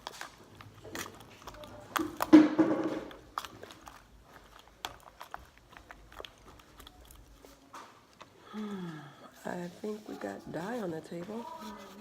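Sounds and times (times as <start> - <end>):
gum chewing with wet smacks: 0.0 - 8.6.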